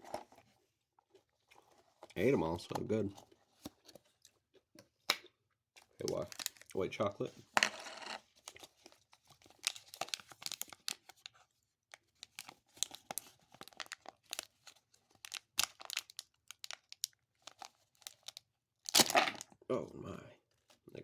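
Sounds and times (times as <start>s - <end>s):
snack packaging crinkling: 5.8s - 6.9s, 8.3s - 19.6s.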